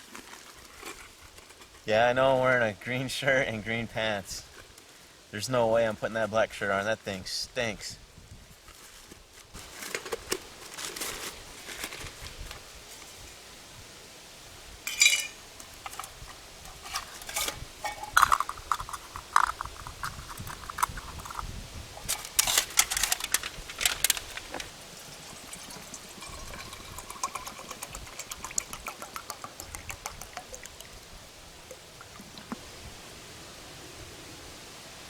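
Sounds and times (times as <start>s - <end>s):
metal cook pot clinking: 14.9s - 16.2s, 16.8s - 19.6s, 22.0s - 30.9s
water pouring: 22.0s - 32.9s.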